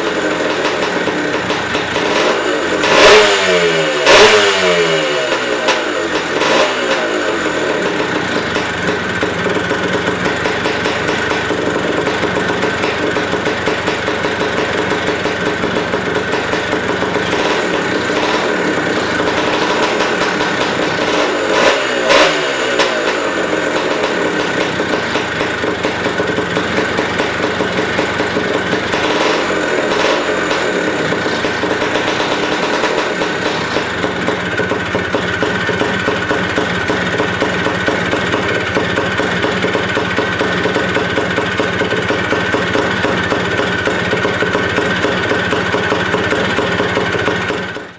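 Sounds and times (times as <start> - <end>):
motorcycle engine idling: 0.0 - 47.9.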